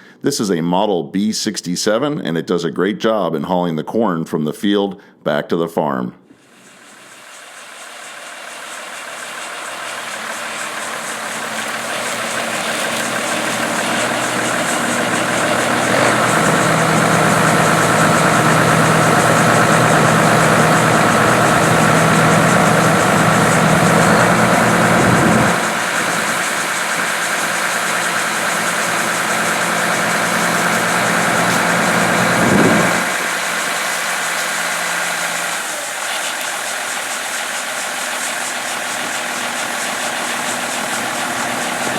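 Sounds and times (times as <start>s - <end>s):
diesel engine running: 6.4s - 41.9s
high whine: 6.4s - 41.9s.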